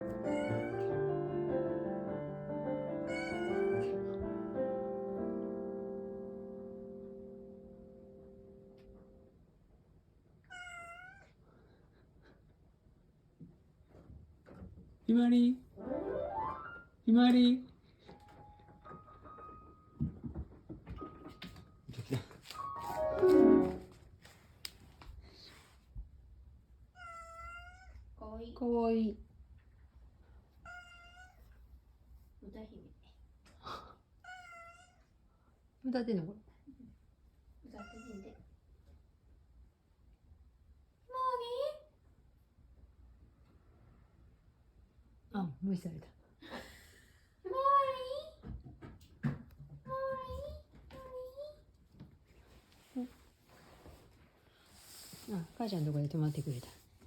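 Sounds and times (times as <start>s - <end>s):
background piano music: 0.0s - 9.4s, 15.7s - 17.2s, 18.2s - 21.9s, 22.5s - 24.1s
cat meowing: 0.2s - 1.0s, 3.0s - 4.2s, 10.4s - 11.4s, 27.0s - 28.0s, 30.6s - 31.5s, 34.2s - 35.1s, 37.8s - 38.4s.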